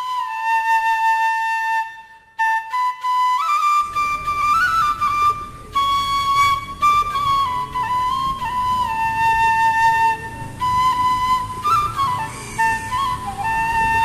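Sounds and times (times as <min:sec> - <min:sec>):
bamboo flute melody: 0:00.0 - 0:14.0
low rumble: 0:03.8 - 0:14.0.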